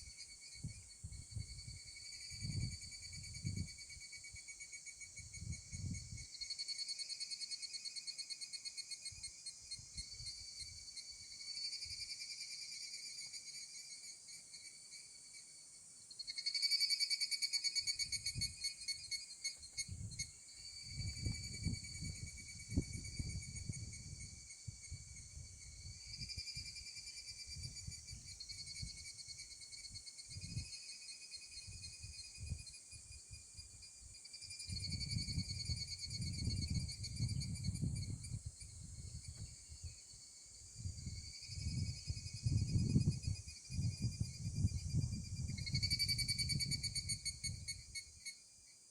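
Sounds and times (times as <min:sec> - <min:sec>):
wind rumble on microphone: 0:00.0 - 0:04.4, 0:05.0 - 0:06.4, 0:18.0 - 0:18.7, 0:19.7 - 0:30.8, 0:31.5 - 0:40.0, 0:40.6 - 0:48.0
insects trilling: 0:00.0 - 0:48.9.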